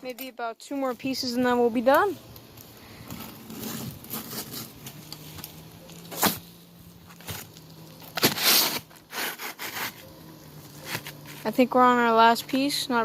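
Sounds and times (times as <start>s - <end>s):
scraping on shingle roof: 3.0s - 5.1s, 6.0s - 11.6s.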